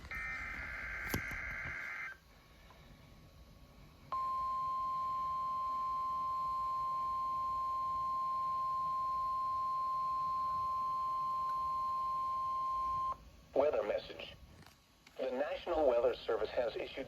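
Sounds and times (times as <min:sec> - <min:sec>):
steady warning alarm tone: 0:00.0 - 0:02.2, 0:04.1 - 0:13.2.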